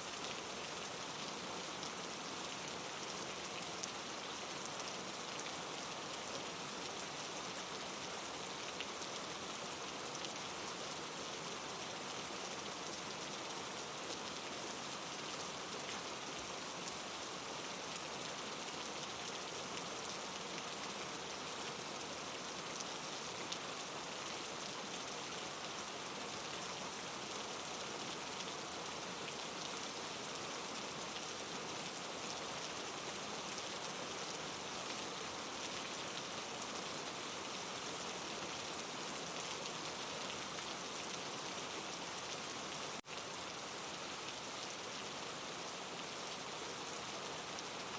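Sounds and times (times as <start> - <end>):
rain falling: 0.0 - 47.9.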